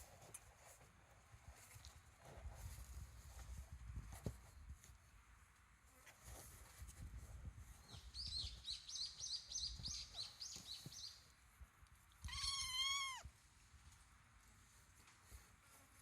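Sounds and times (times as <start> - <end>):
kitten meowing: 12.2 - 13.3.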